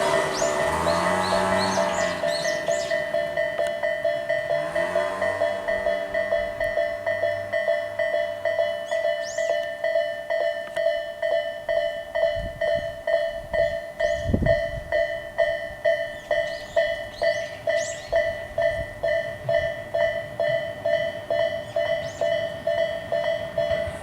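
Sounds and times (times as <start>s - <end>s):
level-crossing warning bell: 0.0s - 24.0s.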